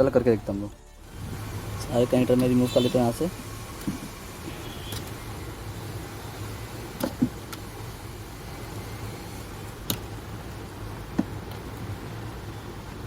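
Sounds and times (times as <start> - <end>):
wire connectors clicking off: 4.8 - 5.2.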